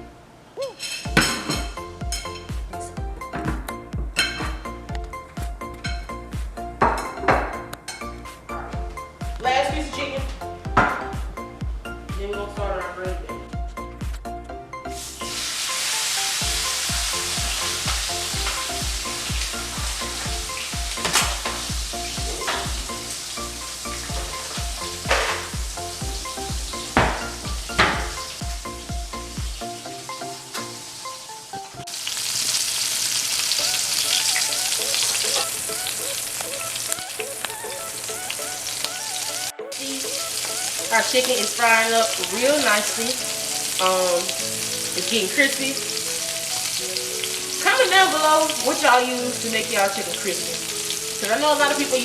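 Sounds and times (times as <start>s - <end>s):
music with beat and bass: 1.1s - 15.4s, 16.4s - 30.5s
chicken sizzling in grease: 15.0s - 52.0s
grease popping: 15.4s - 29.6s, 31.5s - 45.4s
crackling oil pops: 21.0s - 21.6s.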